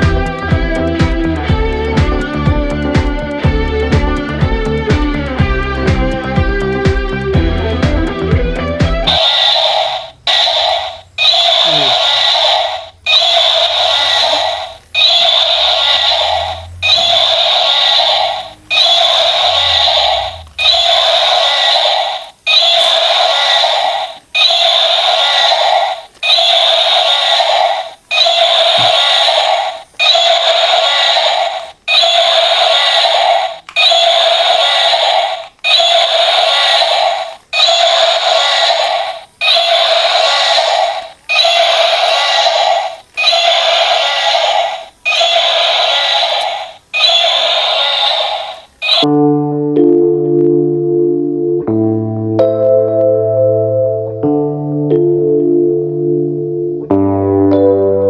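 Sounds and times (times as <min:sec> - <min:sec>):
harsh electronic buzzing pulses: 0:12.7 - 0:22.0.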